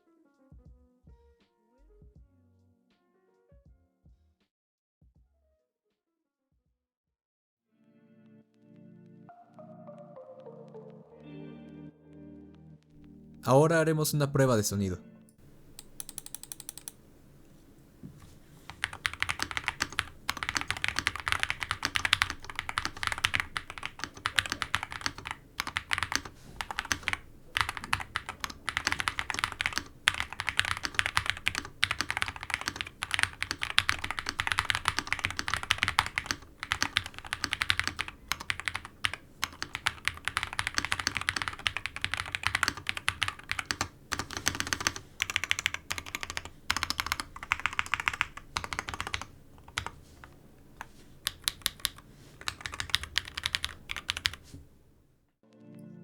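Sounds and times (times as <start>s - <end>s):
mechanical keyboard typing: 15.4s - 54.8s.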